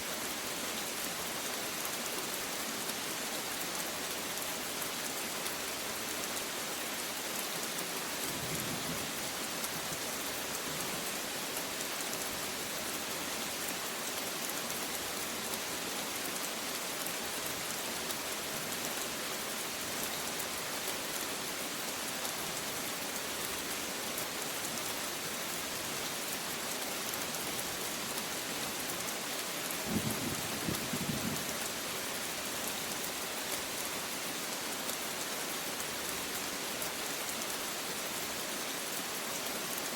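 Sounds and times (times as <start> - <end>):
steady rain falling: 0.0 - 39.9
low rumble of thunder: 29.9 - 31.5.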